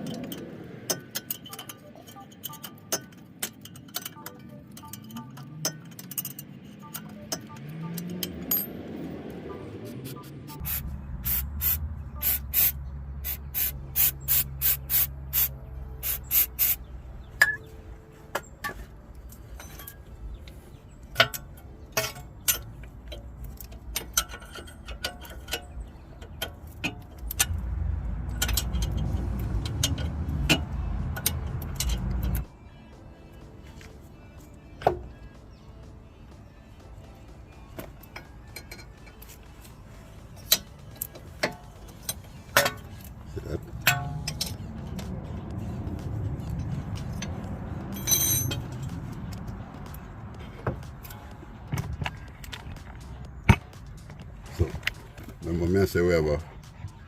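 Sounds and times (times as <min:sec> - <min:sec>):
metallic clicks of hand tools: 0:00.0 - 0:08.7, 0:21.1 - 0:27.7.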